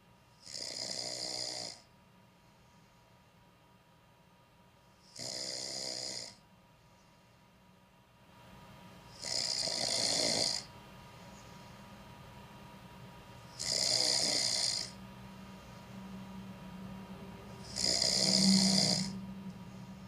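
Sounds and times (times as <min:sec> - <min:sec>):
man snoring: 0:00.4 - 0:01.9, 0:05.1 - 0:06.4, 0:09.1 - 0:10.7, 0:13.5 - 0:15.0, 0:17.6 - 0:19.2.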